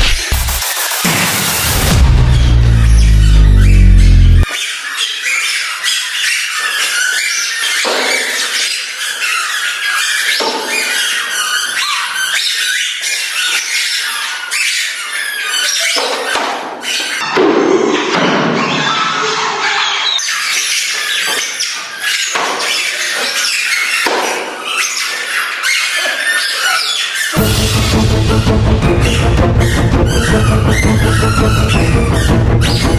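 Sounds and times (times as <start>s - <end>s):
music with heavy bass beat: 0.0s - 4.5s, 27.4s - 32.9s
squeaker toys squeaking: 2.2s - 17.3s, 18.6s - 32.9s
squeaky toys squeaking: 18.6s - 32.9s.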